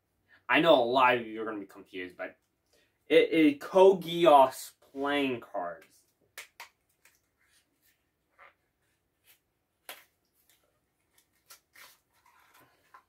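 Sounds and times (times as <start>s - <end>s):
playing cards clicking and tapping: 6.3s - 7.3s, 9.8s - 13.0s.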